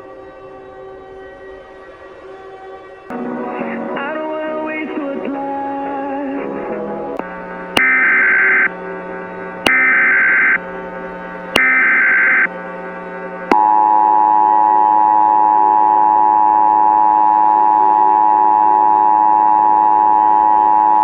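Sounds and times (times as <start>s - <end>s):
steady low hum: 3.1s - 21.0s
two-tone data warble: 7.7s - 10.6s, 11.6s - 12.6s, 13.4s - 21.0s
steady dual alert tone: 7.7s - 21.0s.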